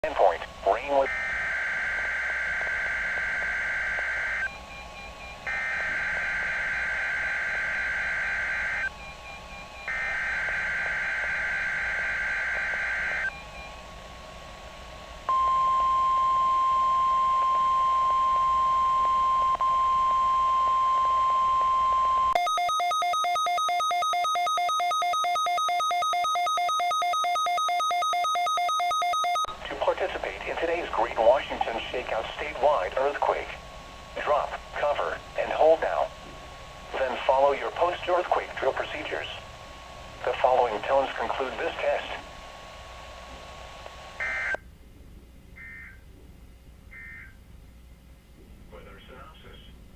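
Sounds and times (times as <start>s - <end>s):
rapidly pulsing siren: 0.2s - 44.6s, 45.6s - 46.1s, 46.9s - 47.4s
buzzy two-tone data warble: 29.7s - 44.6s.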